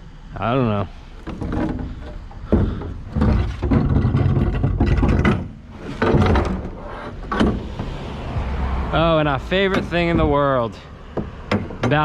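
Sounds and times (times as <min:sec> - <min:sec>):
tyres on uneven road: 0:00.0 - 0:12.0
vehicle engine rumble: 0:00.0 - 0:12.0
knocks: 0:01.2 - 0:08.0, 0:09.7 - 0:12.0.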